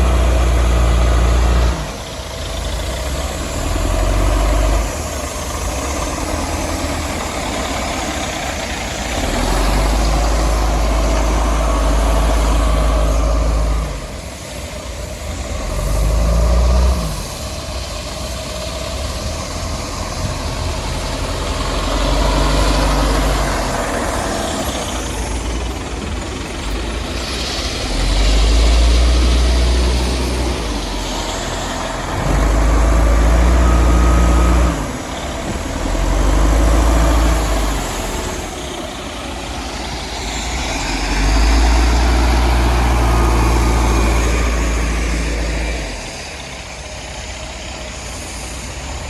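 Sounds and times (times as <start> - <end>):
heavy machinery engine droning: 0.0 - 49.0.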